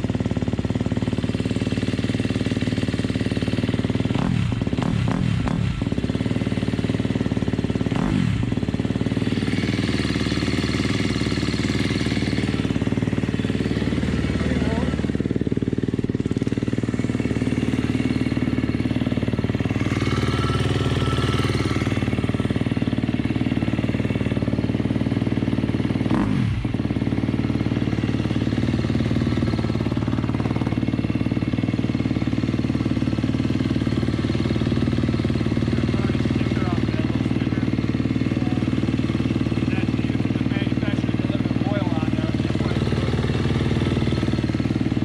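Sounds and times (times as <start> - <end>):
motorcycle engine idling: 0.0 - 45.0.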